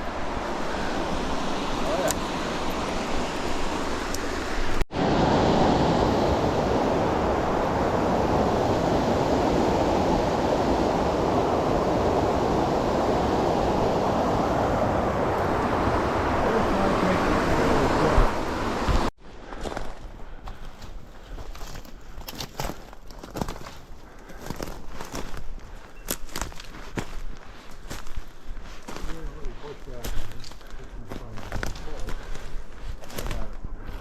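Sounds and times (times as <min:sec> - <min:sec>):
creek water rushing: 0:00.0 - 0:19.1.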